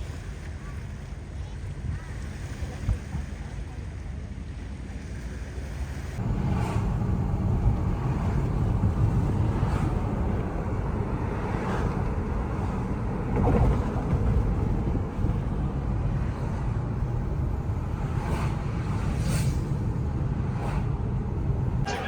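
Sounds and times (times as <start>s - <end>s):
vehicle engine rumbling: 0.0s - 22.0s.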